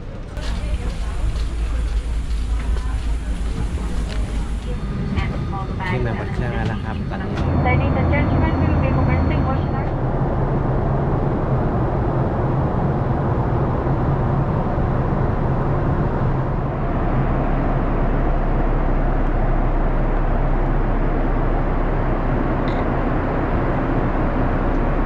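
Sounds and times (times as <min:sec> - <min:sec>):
airliner cabin engine hum: 0:00.0 - 0:25.0.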